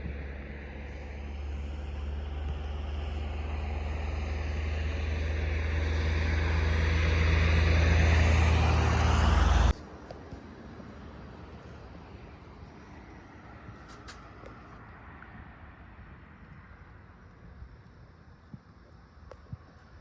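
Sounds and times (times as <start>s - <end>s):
vehicle engine and road hum: 0.0s - 20.0s.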